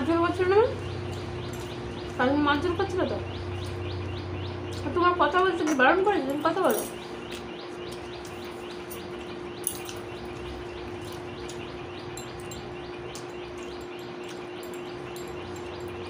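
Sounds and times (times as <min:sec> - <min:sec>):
steady low hum: 0:00.0 - 0:16.0
bird chirping in falling notes: 0:06.4 - 0:16.0.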